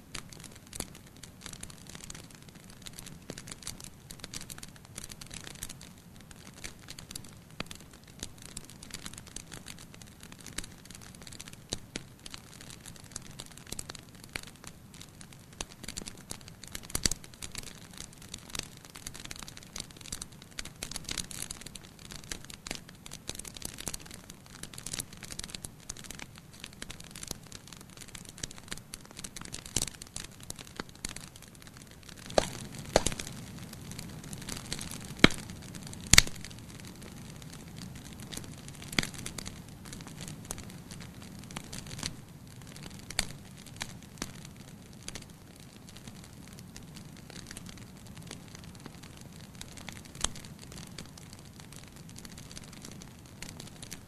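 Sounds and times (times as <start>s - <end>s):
wood fire crackling: 0.0s - 54.0s
loud fire pops: 28.0s - 42.2s.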